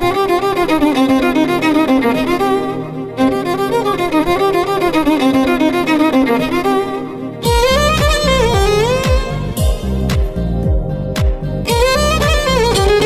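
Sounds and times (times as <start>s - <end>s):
violin melody with vibrato: 0.0s - 10.4s, 11.6s - 13.0s.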